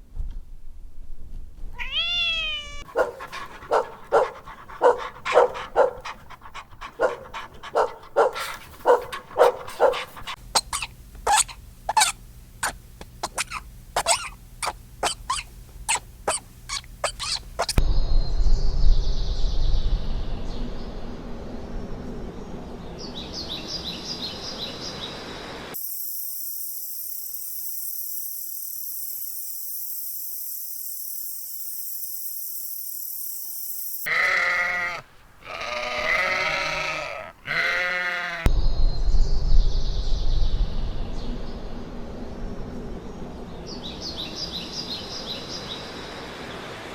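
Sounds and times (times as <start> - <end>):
farm animal bleating: 1.8 - 2.9, 34.1 - 38.5
wind-like rumble: 17.8 - 24.0, 38.5 - 46.9
steady high hiss: 25.1 - 34.1.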